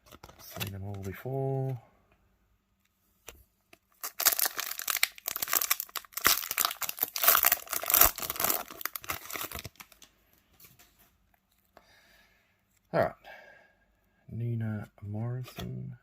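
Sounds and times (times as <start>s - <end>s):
foil wrapper crinkling and tearing: 3.9s - 10.1s.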